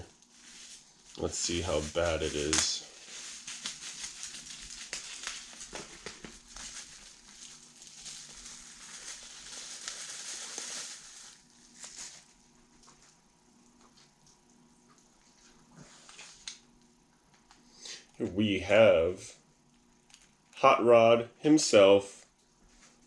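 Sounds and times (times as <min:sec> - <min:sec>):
packaging crinkling: 0:00.1 - 0:13.0, 0:19.7 - 0:20.4.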